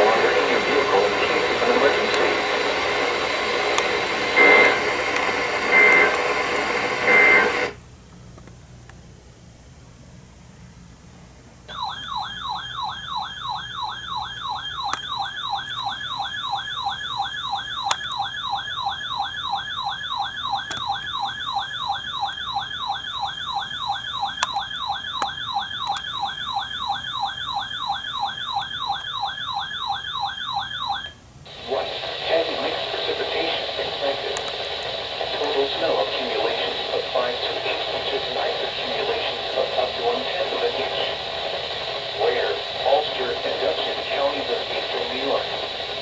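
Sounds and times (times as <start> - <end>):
hissy radio audio: 0.0 - 7.8, 31.5 - 46.0
warbling emergency alert tone: 11.7 - 31.2.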